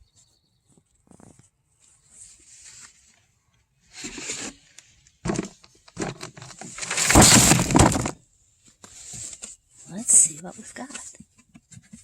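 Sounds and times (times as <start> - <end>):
plant and soil rustling: 6.1 - 8.2.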